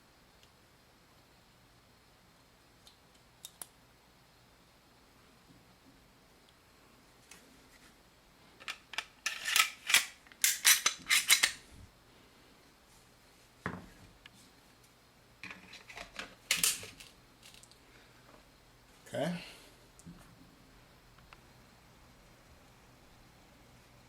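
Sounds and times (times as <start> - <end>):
pistol parts clicking and snapping: 8.6 - 11.6.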